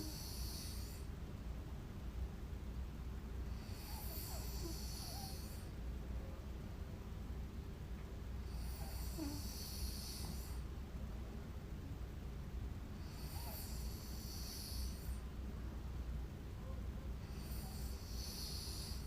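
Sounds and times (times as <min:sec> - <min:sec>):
woman snoring: 0:00.0 - 0:01.1, 0:03.5 - 0:05.6, 0:08.5 - 0:10.6, 0:13.0 - 0:15.2, 0:17.3 - 0:19.0.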